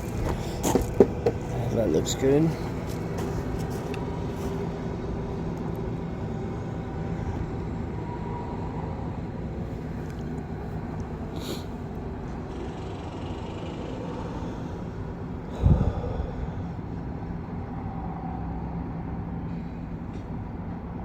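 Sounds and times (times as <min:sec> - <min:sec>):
outdoor background rumble: 0:00.0 - 0:21.0.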